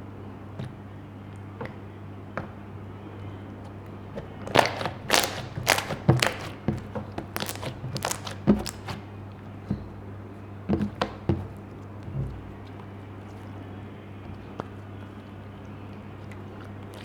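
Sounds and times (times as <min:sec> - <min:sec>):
slime wet pops and clicks: 0:04.5 - 0:06.6, 0:07.4 - 0:09.0.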